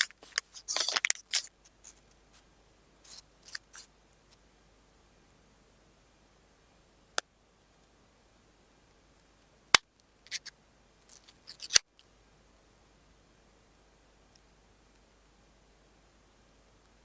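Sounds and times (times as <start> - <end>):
packaging rustles and scrapes: 0.0 - 2.0, 3.0 - 3.9.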